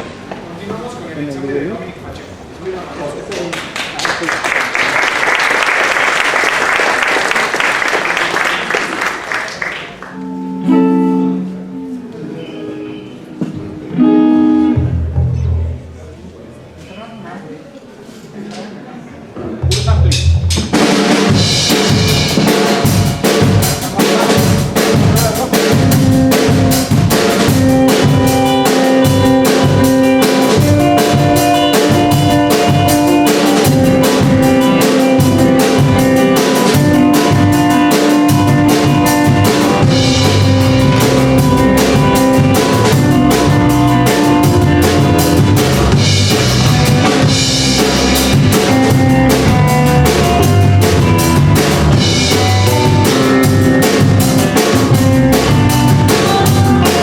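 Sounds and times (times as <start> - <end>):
sustained chords: 10.0 - 16.0, 27.8 - 54.5
drum kit beat: 19.6 - 57.0.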